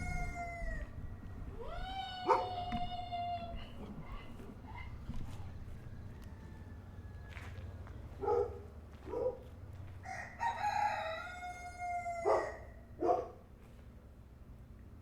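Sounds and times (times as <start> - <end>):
rooster crowing: 0.0 - 1.0, 5.7 - 7.6, 10.0 - 12.8
low background hum: 0.0 - 15.0.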